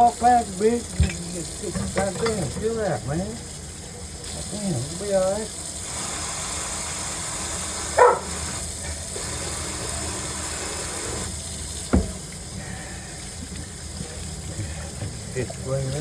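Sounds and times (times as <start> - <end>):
running water rushing: 0.0 - 16.0
dog barking: 7.9 - 8.4.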